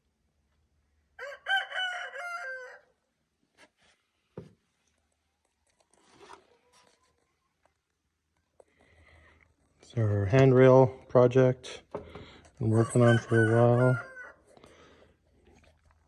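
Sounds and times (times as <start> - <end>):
rooster crowing: 1.2 - 3.0, 12.7 - 14.5.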